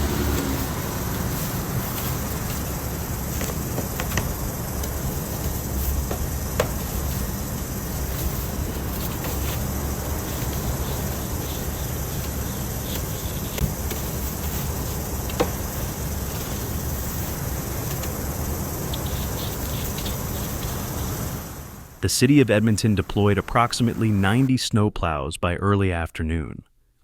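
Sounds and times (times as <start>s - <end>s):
car driving on snowy road: 0.0s - 21.6s
constant hiss: 0.0s - 27.0s.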